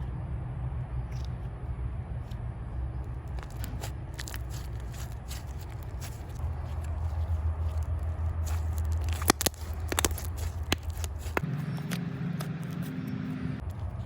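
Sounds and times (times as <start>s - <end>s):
small crackles and clicks: 3.0s - 12.9s
slime squished by hand: 3.2s - 12.9s.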